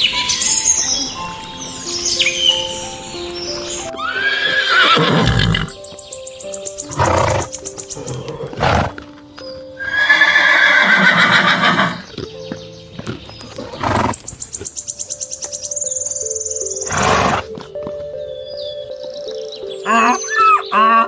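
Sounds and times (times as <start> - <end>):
background music: 0.0 - 21.0
horse whinnying: 3.9 - 5.8, 6.9 - 9.1, 9.8 - 12.1, 16.9 - 17.6, 19.8 - 21.0.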